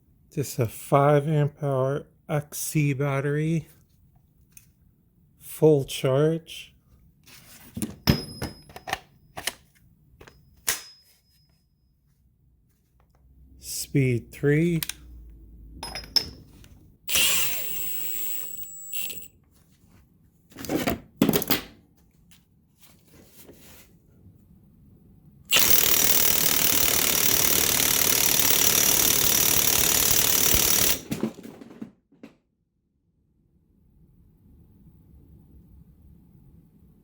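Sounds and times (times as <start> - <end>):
impact wrench hammering: 17.1 - 19.3, 25.5 - 31.2
handling knocks and clatters: 31.0 - 32.4.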